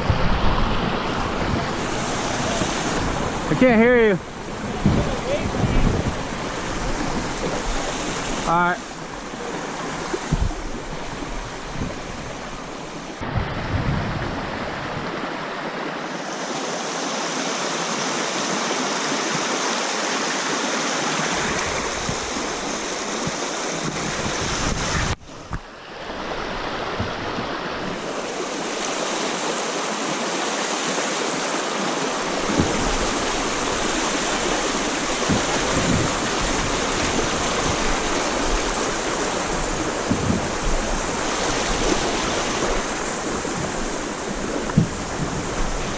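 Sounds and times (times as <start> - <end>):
river water rushing over dam: 0.0 - 45.9.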